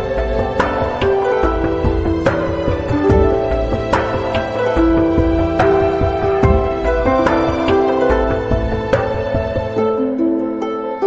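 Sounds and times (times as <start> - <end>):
soft background music: 0.0 - 11.0.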